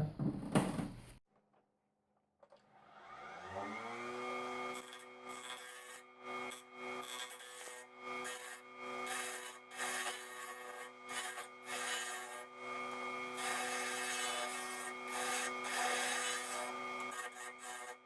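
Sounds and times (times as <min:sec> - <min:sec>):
wood lathe motor hum: 0:02.9 - 0:18.0
turning tool scraping wood: 0:04.7 - 0:18.0.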